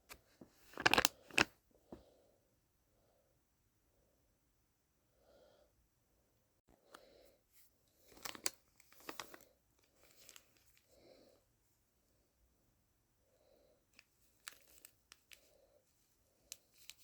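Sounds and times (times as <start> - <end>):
packaging crinkling and tearing: 0.6 - 1.5, 8.0 - 10.8.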